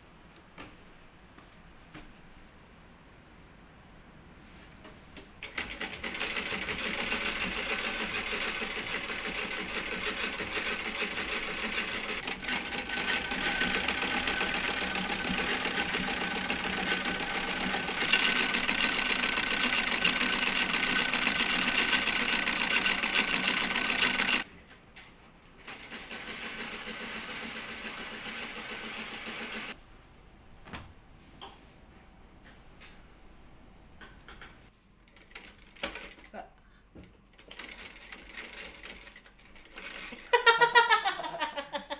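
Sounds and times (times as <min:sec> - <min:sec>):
treadle sewing machine rattling: 0:05.4 - 0:24.5, 0:25.7 - 0:29.8, 0:37.3 - 0:40.3.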